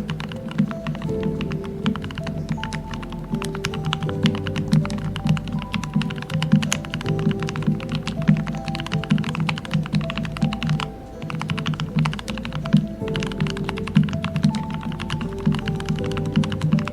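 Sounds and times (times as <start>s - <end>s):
soft background music: 0.0s - 16.9s.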